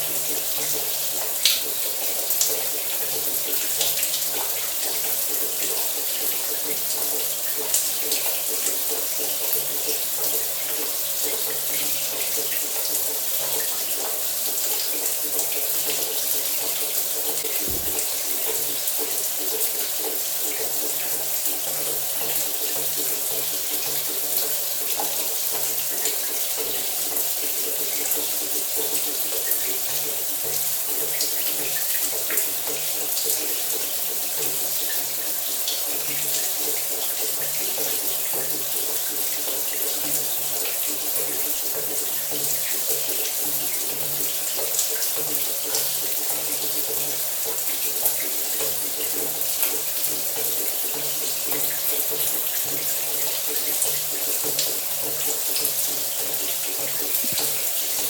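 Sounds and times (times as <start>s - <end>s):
shower water spraying: 17.4s - 19.4s
low thump: 17.6s - 18.6s.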